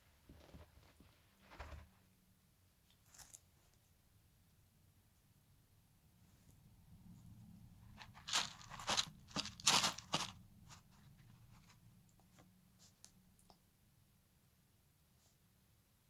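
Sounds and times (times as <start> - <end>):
lizard crunching a grub: 8.0 - 10.4.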